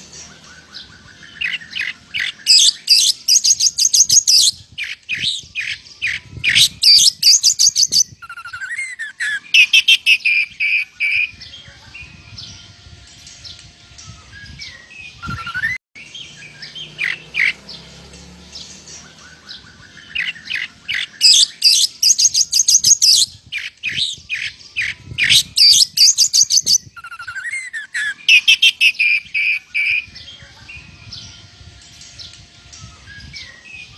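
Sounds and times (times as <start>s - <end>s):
songbird singing: 0.0s - 33.9s
sharp high bird chips: 1.4s - 11.3s, 20.1s - 30.0s
rising bird whistles: 14.3s - 15.8s, 25.2s - 30.1s.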